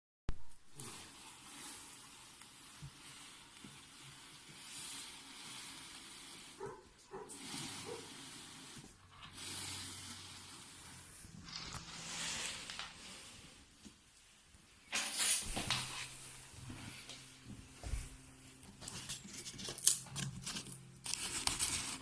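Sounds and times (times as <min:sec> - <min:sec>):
packaging rustling and crinkling: 0:18.5 - 0:22.0.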